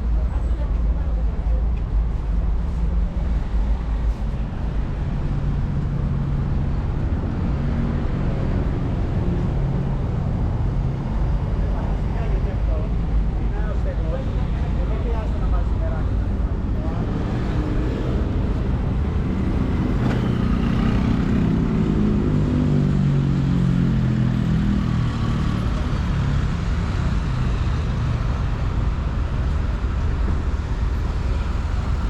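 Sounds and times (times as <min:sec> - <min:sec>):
low traffic rumble: 0:00.0 - 0:32.0.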